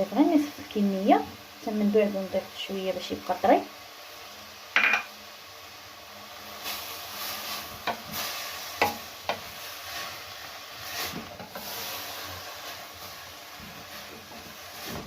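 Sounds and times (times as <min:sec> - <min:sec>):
vegetables sizzling in butter: 0:00.0 - 0:15.0
spoon knocking against pan: 0:04.8 - 0:05.1.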